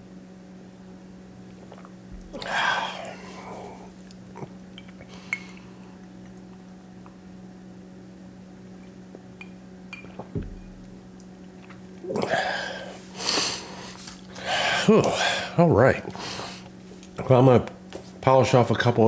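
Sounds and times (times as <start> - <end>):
steady low hum: 0.0 - 19.0
glassware and dishes clinking: 9.4 - 10.2.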